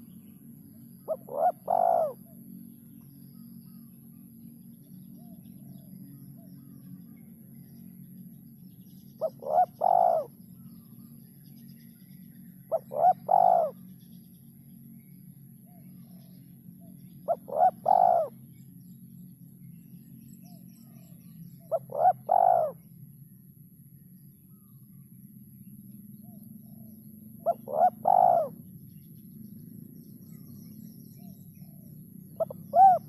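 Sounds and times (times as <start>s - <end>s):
dove cooing: 1.0s - 2.4s, 9.2s - 10.4s, 12.7s - 13.8s, 17.3s - 18.4s, 21.7s - 22.8s, 27.4s - 28.6s, 32.4s - 33.0s.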